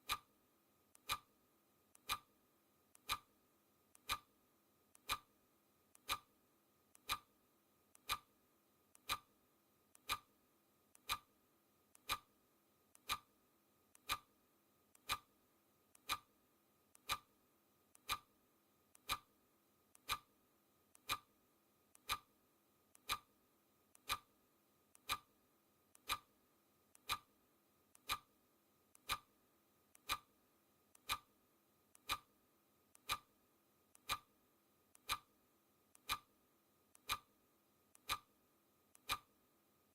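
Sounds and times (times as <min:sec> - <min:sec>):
clock ticking: 0:00.0 - 0:00.3, 0:00.9 - 0:01.3, 0:01.9 - 0:02.3, 0:02.9 - 0:03.3, 0:03.9 - 0:04.3, 0:04.9 - 0:05.3, 0:05.9 - 0:06.3, 0:06.9 - 0:07.3, 0:07.9 - 0:08.3, 0:08.9 - 0:09.3, 0:09.9 - 0:10.3, 0:11.0 - 0:11.3, 0:11.9 - 0:12.3, 0:12.9 - 0:13.3, 0:14.0 - 0:14.3, 0:15.0 - 0:15.3, 0:16.0 - 0:16.3, 0:17.0 - 0:17.3, 0:17.9 - 0:18.3, 0:18.9 - 0:19.3, 0:20.0 - 0:20.3, 0:20.9 - 0:21.3, 0:21.9 - 0:22.3, 0:22.9 - 0:23.3, 0:23.9 - 0:24.3, 0:25.0 - 0:25.3, 0:25.9 - 0:26.3, 0:26.9 - 0:27.3, 0:28.0 - 0:28.3, 0:29.0 - 0:29.3, 0:29.9 - 0:30.3, 0:31.0 - 0:31.3, 0:31.9 - 0:32.3, 0:32.9 - 0:33.3, 0:33.9 - 0:34.3, 0:34.9 - 0:35.3, 0:36.0 - 0:36.3, 0:36.9 - 0:37.3, 0:37.9 - 0:38.3, 0:38.9 - 0:39.3.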